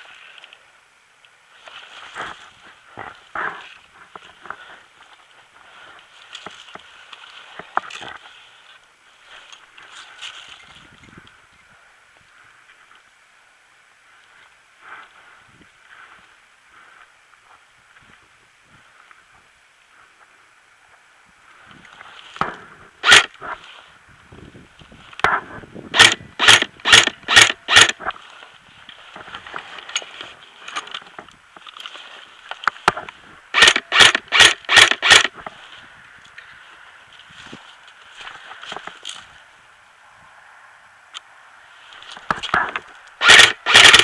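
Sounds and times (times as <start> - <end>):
airsoft gun shots: 22.4 - 23.3, 25.3 - 28.0, 33.6 - 35.3, 42.6 - 44.0.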